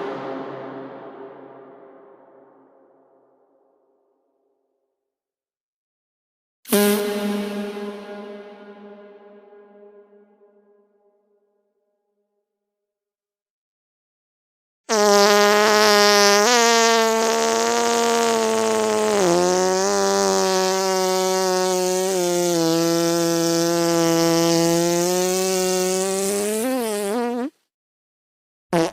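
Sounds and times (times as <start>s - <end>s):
buzzy fart sound effect: 6.7s - 9.2s, 14.9s - 27.6s.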